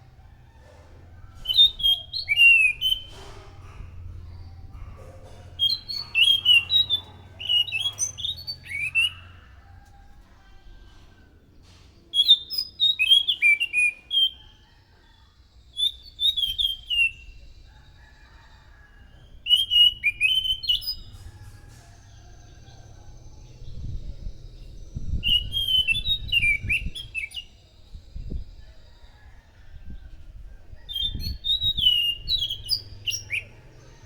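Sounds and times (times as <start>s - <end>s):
thrush singing whistled notes: 1.3s - 3.2s, 5.6s - 9.4s, 15.8s - 17.6s, 19.3s - 21.3s, 23.6s - 28.4s, 30.8s - 33.6s.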